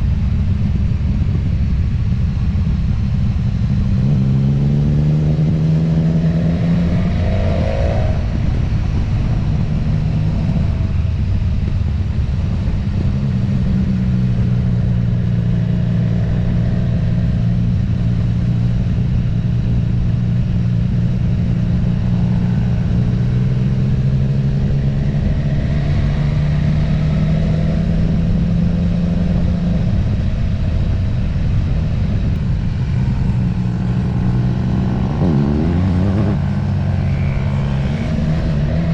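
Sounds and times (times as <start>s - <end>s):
road and wind rumble: 0.0s - 38.9s
vehicle engine cruising: 0.0s - 38.9s.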